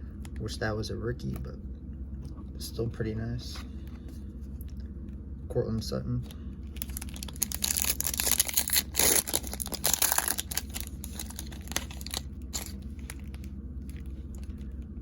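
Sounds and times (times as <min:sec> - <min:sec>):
cards rustling: 0:06.2 - 0:14.8
foil wrapper tearing and crinkling: 0:06.7 - 0:14.0.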